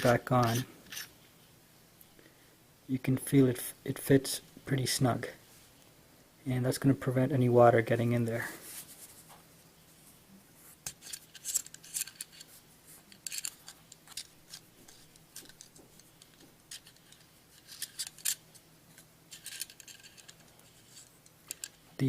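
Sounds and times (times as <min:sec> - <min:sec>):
metal threads scraping and clicking: 0:00.0 - 0:01.1, 0:10.8 - 0:21.8.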